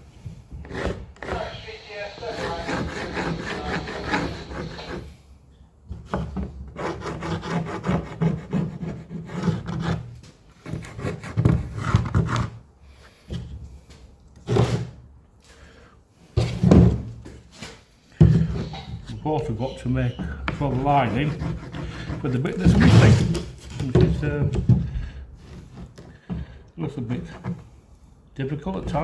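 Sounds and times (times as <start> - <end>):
wood rubbed and scraped by hand: 0.6 - 5.2, 6.1 - 12.6, 18.4 - 24.8.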